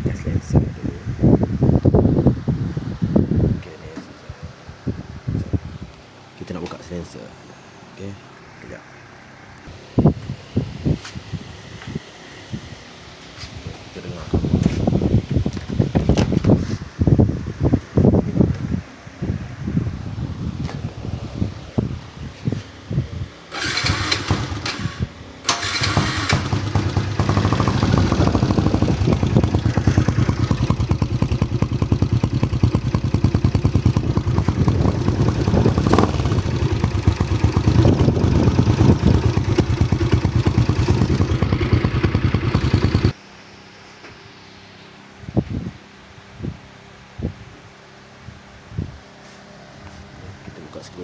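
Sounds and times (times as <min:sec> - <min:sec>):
motorcycle engine running loudly: 0:23.6 - 0:43.2.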